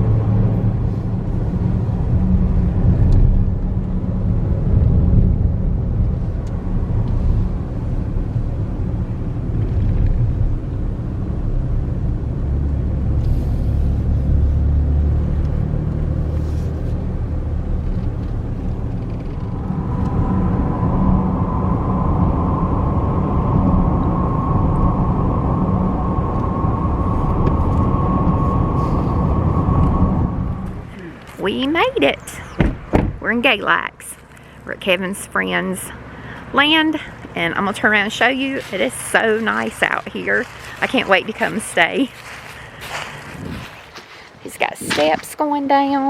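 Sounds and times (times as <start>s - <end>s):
car tyre and engine rumble: 0.0s - 46.0s
high-pitched whine: 17.5s - 32.5s.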